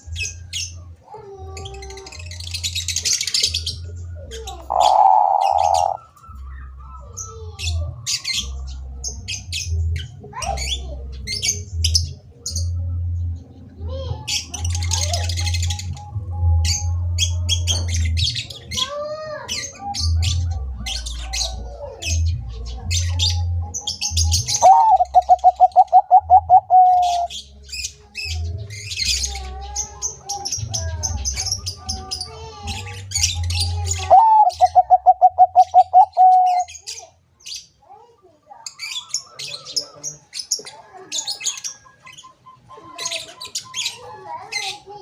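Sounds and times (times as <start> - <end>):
doves cooing: 0.0 - 11.7, 19.5 - 32.1, 32.7 - 36.7
small birds chirping: 0.0 - 45.0.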